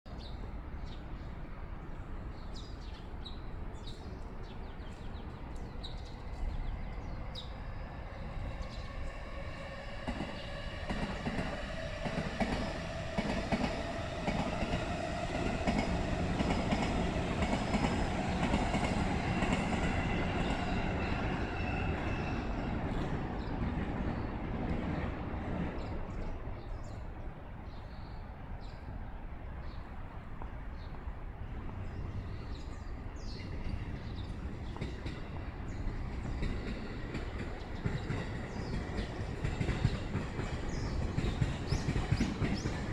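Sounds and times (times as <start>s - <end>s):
train wheels rumbling on rails: 3.6s - 27.3s, 29.8s - 42.9s.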